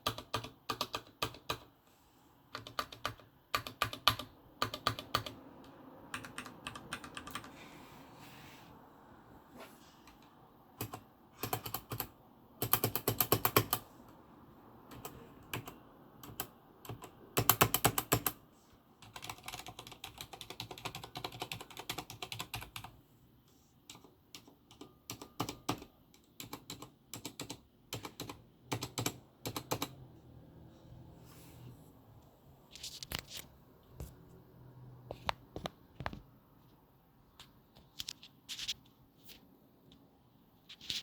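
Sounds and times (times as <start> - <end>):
mechanical keyboard typing: 0.0 - 1.7, 2.5 - 7.6, 10.1 - 13.9, 14.9 - 18.4, 19.0 - 23.0, 23.8 - 30.0.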